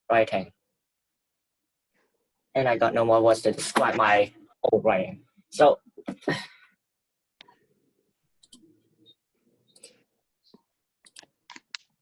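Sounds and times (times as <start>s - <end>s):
computer mouse clicks: 8.4s - 8.7s, 9.7s - 12.0s.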